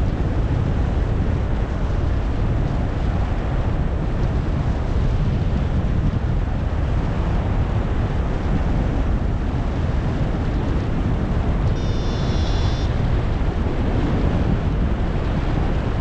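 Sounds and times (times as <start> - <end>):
wind buffeting microphone: 0.0 - 16.0
high pulsing beep: 11.8 - 12.9.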